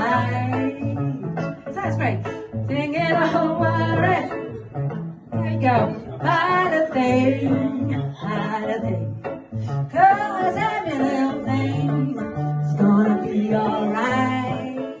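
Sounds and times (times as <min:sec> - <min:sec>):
guitar accompaniment: 0:00.0 - 0:15.0
person singing: 0:05.5 - 0:09.2, 0:10.0 - 0:15.0.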